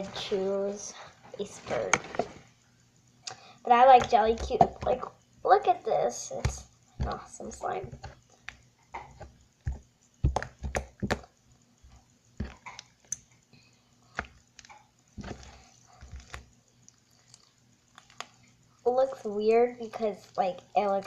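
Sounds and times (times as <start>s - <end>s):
hands squishing slime: 6.3s - 11.3s, 14.1s - 18.4s.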